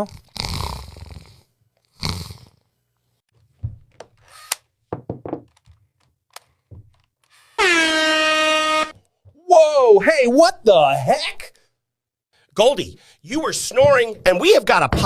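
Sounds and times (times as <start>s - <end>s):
dog snoring: 0.0s - 2.6s
faint knocks and clicks: 4.9s - 7.3s.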